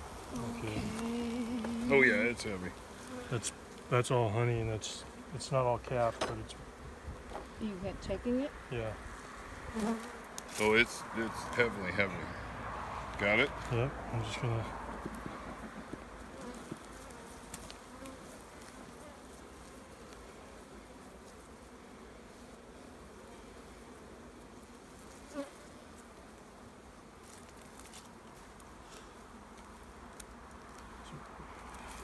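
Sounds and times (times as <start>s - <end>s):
bees buzzing: 0.0s - 20.6s.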